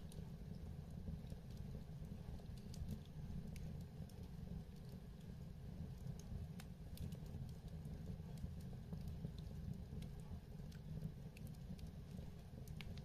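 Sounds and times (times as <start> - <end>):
fireplace fire crackling: 0.0 - 13.0.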